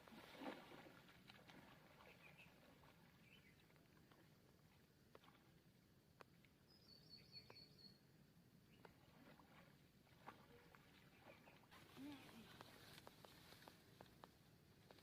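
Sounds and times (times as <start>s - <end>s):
faint high chirping trill: 6.7s - 8.0s.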